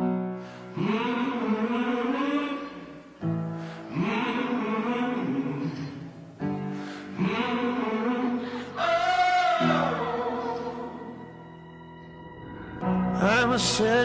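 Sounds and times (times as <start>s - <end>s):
choir-like chant of sung notes: 0.6s - 14.0s
low drone: 7.1s - 14.0s.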